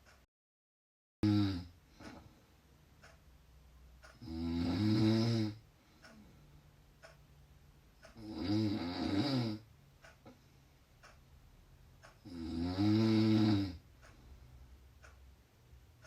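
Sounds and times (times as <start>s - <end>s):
person snoring loudly: 1.2s - 1.7s, 4.2s - 5.6s, 8.2s - 9.6s, 12.2s - 13.8s.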